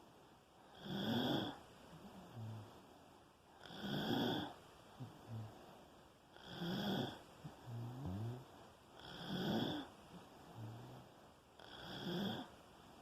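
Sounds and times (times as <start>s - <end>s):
person snoring: 0.7s - 2.8s, 3.6s - 5.6s, 6.4s - 9.9s, 10.5s - 12.5s.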